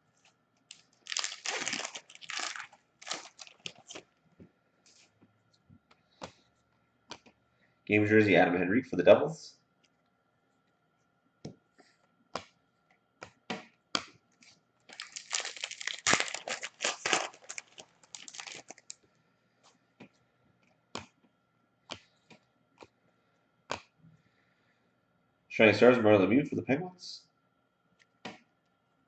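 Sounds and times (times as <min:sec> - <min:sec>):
wrapper torn and crinkled: 0:00.7 - 0:04.0, 0:14.9 - 0:19.0.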